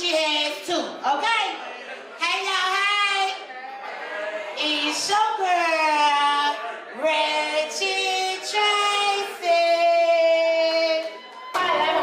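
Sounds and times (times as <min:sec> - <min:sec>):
woman singing unaccompanied: 0:04.7 - 0:12.0.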